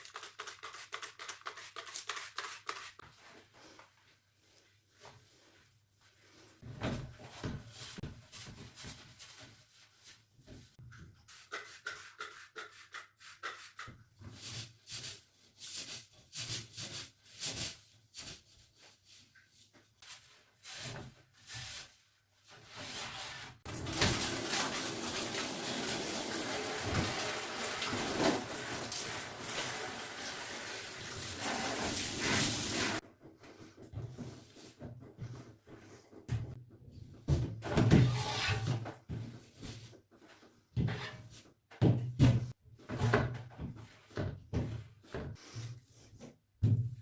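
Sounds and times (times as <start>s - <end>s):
tap water running: 23.7s - 33.0s.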